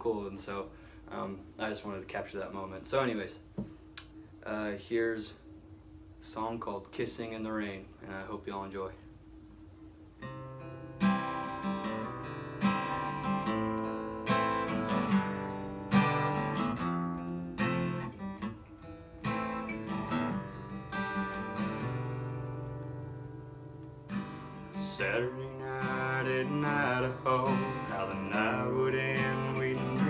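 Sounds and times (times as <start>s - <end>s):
acoustic guitar strumming chords: 10.2s - 30.0s.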